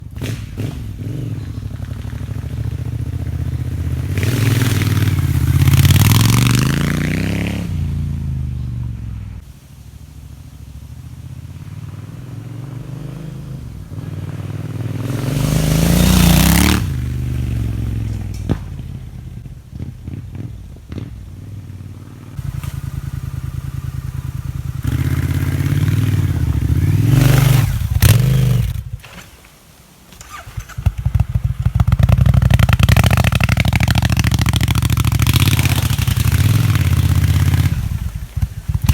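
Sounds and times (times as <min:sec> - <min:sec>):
motorcycle engine idling and revving: 0:00.0 - 0:38.9
exhaust pops: 0:13.6 - 0:38.9.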